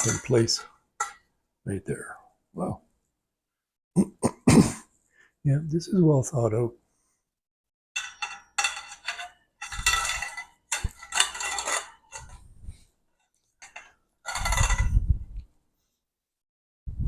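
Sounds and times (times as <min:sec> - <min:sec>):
metal shelf parts clanking: 0:00.0 - 0:01.2, 0:08.0 - 0:12.4, 0:13.6 - 0:15.0.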